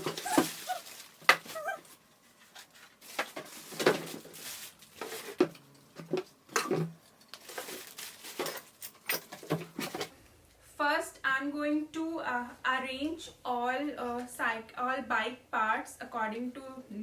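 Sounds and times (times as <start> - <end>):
packaging rustling: 0.0 - 10.1.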